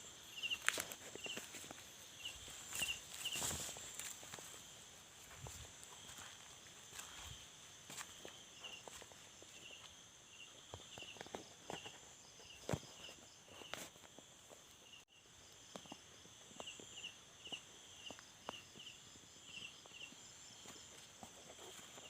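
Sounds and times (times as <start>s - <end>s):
insects chirping: 0.0s - 22.0s
footsteps walking: 0.4s - 10.0s.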